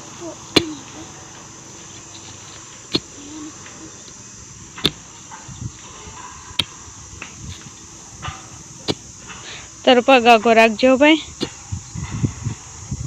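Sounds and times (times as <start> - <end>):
insect chirring: 0.0 - 13.0
iron bar striking hard ground: 0.5 - 1.0, 1.9 - 3.8, 4.7 - 9.5, 11.4 - 11.8.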